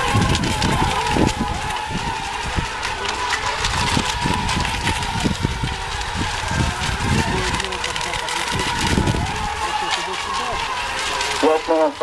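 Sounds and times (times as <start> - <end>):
wind buffeting microphone: 0.0 - 12.0.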